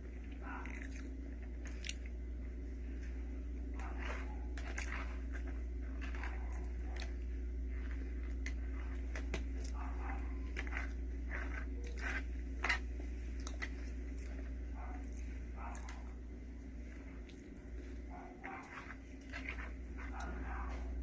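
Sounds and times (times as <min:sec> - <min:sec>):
steady low hum: 0:00.0 - 0:21.0
chewing clicks: 0:00.2 - 0:02.1, 0:13.4 - 0:16.2.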